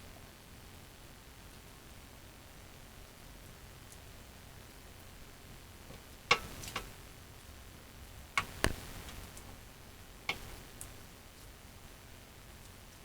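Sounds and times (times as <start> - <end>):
sharp clicks and knocks: 5.9 - 6.9, 10.3 - 10.5.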